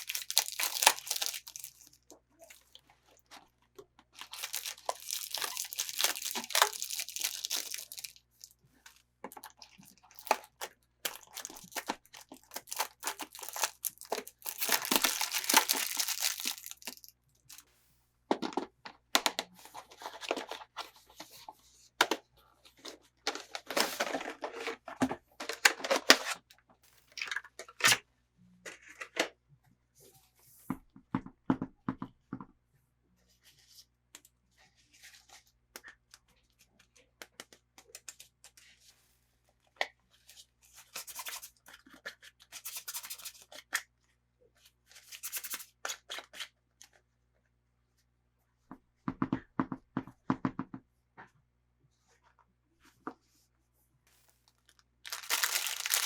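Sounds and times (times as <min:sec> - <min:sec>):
packaging crinkling and tearing: 0:00.0 - 0:02.7, 0:04.2 - 0:08.6, 0:09.4 - 0:17.7, 0:54.4 - 0:56.0.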